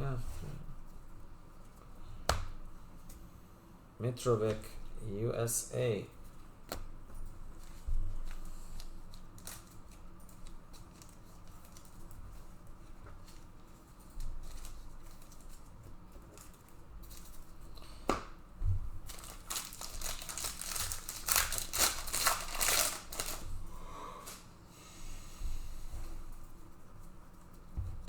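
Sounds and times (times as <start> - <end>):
plastic wrapper crinkling and tearing: 8.2 - 12.1, 19.0 - 23.6.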